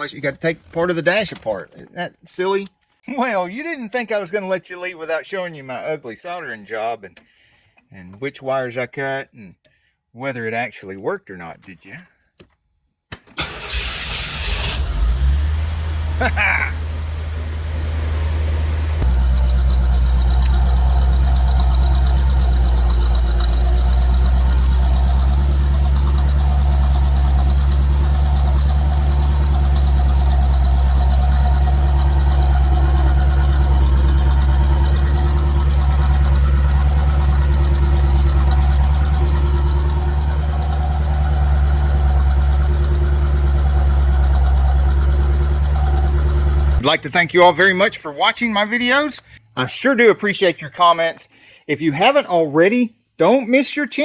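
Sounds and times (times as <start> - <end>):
car engine idling: 13.4 - 47.2.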